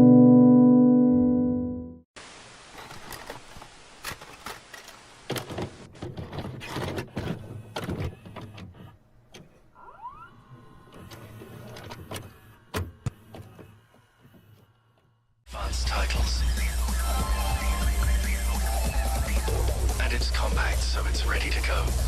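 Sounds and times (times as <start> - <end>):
sharp mechanical clicks and knocks: 4.0 - 9.6.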